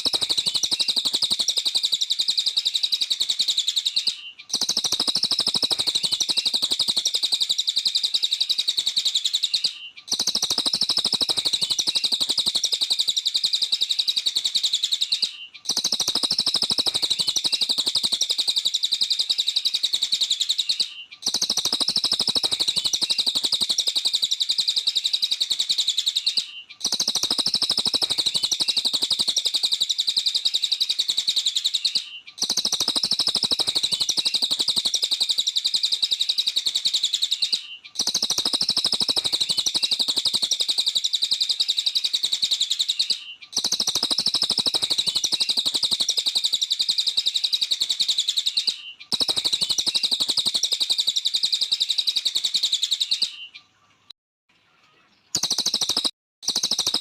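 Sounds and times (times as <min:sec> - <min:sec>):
bird rapid high chirping: 0:00.0 - 0:53.8, 0:55.0 - 0:57.0.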